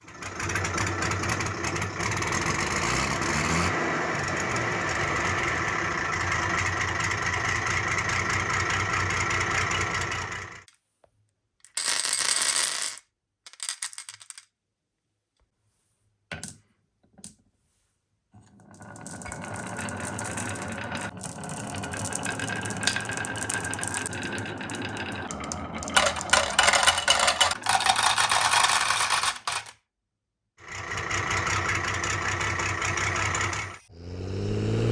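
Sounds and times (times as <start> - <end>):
marble clacks: 11.6 - 14.5, 18.6 - 29.8
marbles rolling and clattering: 11.6 - 14.5, 18.4 - 29.8.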